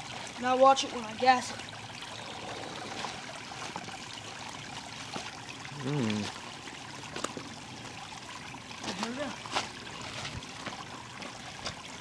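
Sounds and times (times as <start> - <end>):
flowing water rushing: 0.0 - 12.0
short low vocal sound: 5.7 - 6.3.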